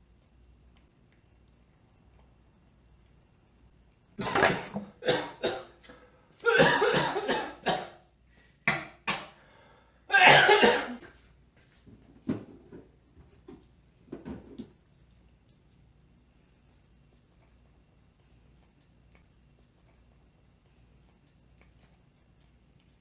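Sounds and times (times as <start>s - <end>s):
person coughing: 4.2s - 5.8s, 6.4s - 8.0s, 10.1s - 11.2s.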